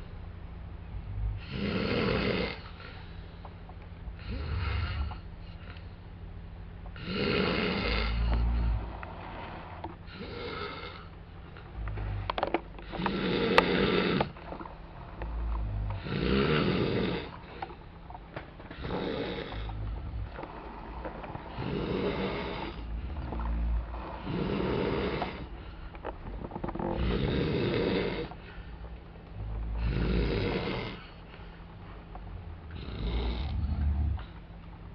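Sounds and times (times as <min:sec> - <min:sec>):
men snoring: 0:01.1 - 0:03.0, 0:04.1 - 0:05.3, 0:07.0 - 0:11.1, 0:11.8 - 0:17.8, 0:18.7 - 0:28.6, 0:29.3 - 0:31.2, 0:32.4 - 0:34.4.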